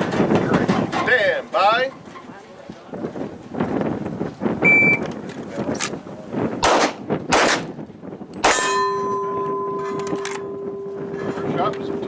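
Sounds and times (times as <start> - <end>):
shot timer beep: 4.6 - 5.0
pistol shots: 6.6 - 7.7
steel target ringing: 8.4 - 12.0.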